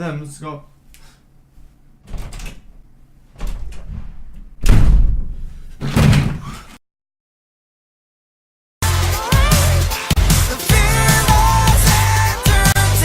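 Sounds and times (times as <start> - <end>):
door banging shut: 2.0 - 6.6
door rattling: 2.0 - 6.6.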